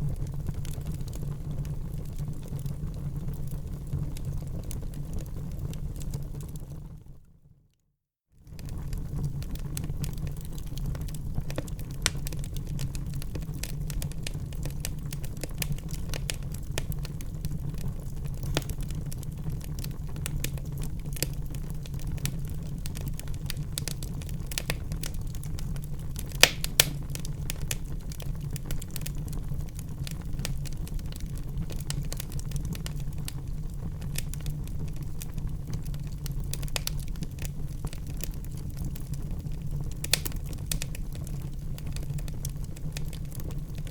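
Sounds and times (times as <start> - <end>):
wood fire crackling: 0.0 - 7.0, 8.4 - 43.9
sharp pops of fire: 18.3 - 18.9, 26.2 - 29.2, 40.0 - 41.0.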